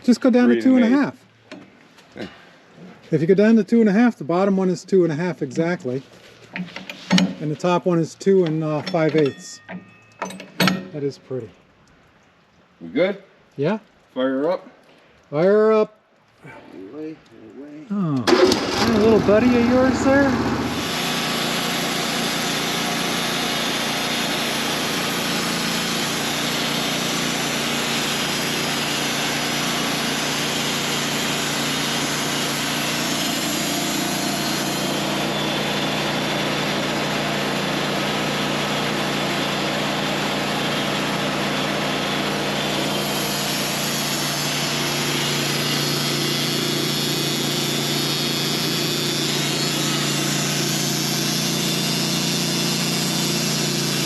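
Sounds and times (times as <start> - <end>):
sawmill engine and blade sawing: 18.3 - 54.0.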